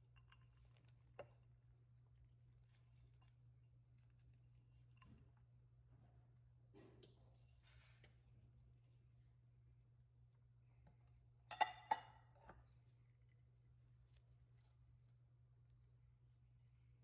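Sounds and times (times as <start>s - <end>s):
kitchenware clinking: 10.9s - 12.6s.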